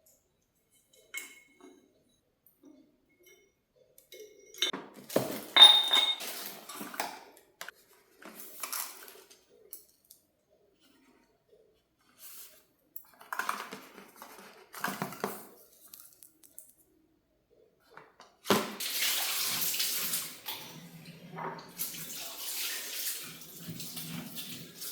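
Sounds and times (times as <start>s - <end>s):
crockery knocking and clinking: 4.2s - 6.6s.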